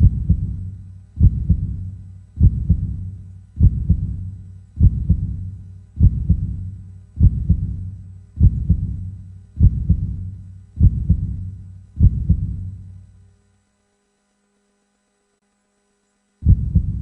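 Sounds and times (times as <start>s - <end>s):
heartbeat thumping: 0.0s - 12.9s, 16.4s - 17.0s.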